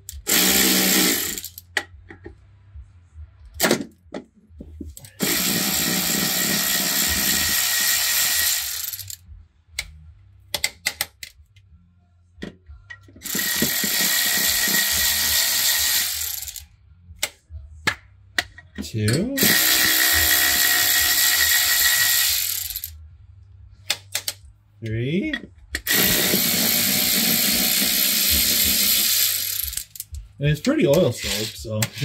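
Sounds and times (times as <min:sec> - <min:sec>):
power tool driving out bolts: 0:00.1 - 0:01.6, 0:05.2 - 0:09.2, 0:13.2 - 0:16.6, 0:19.4 - 0:22.9, 0:25.8 - 0:30.0.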